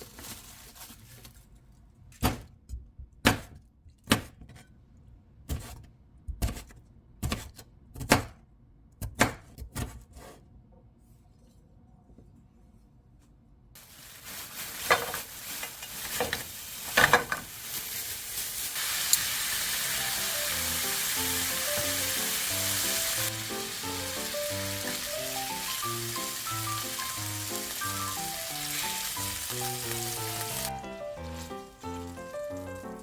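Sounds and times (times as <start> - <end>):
food sizzling in a pan: 13.8 - 33.0.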